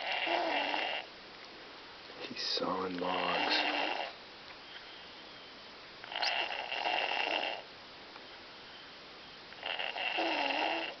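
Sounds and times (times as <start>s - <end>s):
small child snoring: 0.0s - 1.1s, 3.1s - 4.2s, 6.1s - 7.7s, 9.6s - 11.0s.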